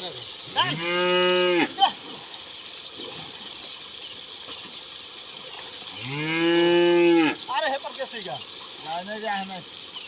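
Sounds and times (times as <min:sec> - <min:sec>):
water running through a drain: 0:00.0 - 0:10.0
cow mooing: 0:00.6 - 0:01.8, 0:06.0 - 0:07.4.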